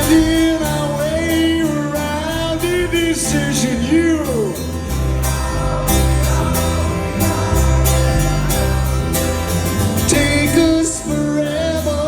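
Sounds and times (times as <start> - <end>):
bass line: 0.0 - 12.0
rock band playing: 0.0 - 12.0.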